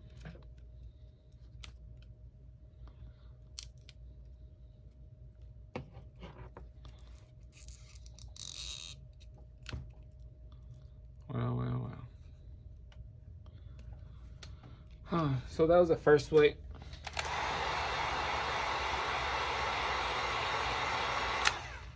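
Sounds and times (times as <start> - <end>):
faint steady hum: 0.0 - 21.9
small clicks and scraping: 5.4 - 11.3.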